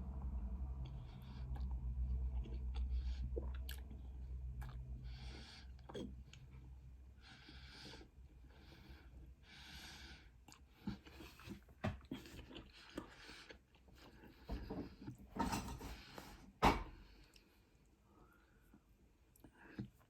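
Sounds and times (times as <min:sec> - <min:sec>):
chewing and wet mouth sounds: 0:00.1 - 0:09.0, 0:10.4 - 0:15.2.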